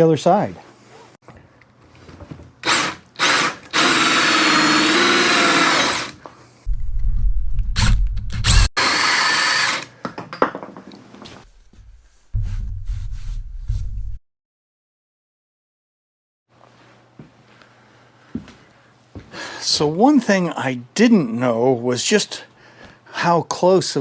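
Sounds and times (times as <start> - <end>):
power drill hole saw cutting wood: 2.6 - 6.2, 8.4 - 9.9
low rumble: 6.7 - 8.7, 11.5 - 14.2.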